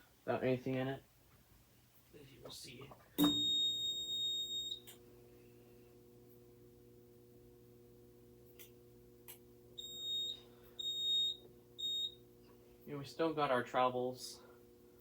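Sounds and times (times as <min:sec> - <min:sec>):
low steady hum: 0:00.0 - 0:15.0
alarm panel beeping: 0:03.2 - 0:05.0, 0:09.8 - 0:12.2.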